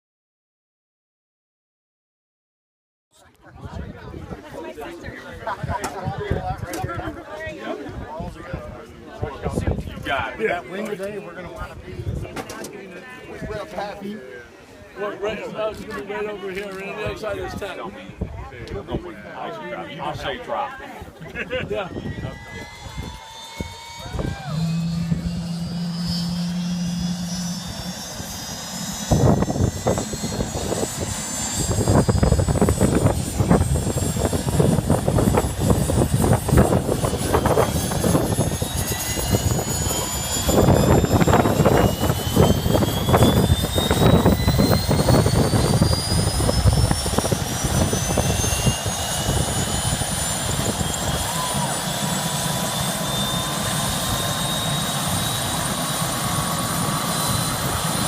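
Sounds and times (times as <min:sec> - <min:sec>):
helicopter turbine whine: 0:03.5 - 0:58.0
helicopter rotor chop: 0:15.0 - 0:58.0.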